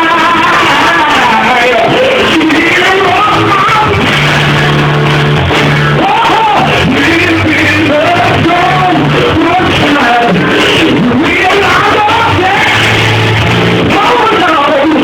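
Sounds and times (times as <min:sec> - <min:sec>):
gospel singing voice: 0:00.0 - 0:15.0
held low bass notes: 0:02.8 - 0:14.0.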